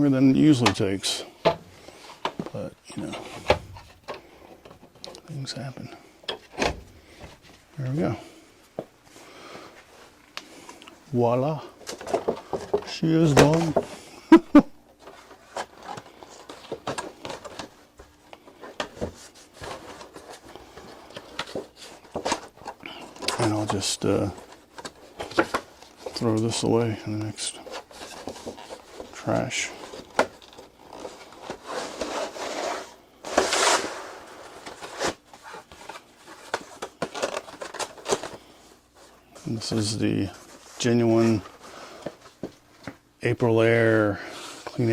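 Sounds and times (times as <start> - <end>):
rustling and rubbing: 27.4 - 43.1
scrape: 31.0 - 35.6, 39.0 - 42.2.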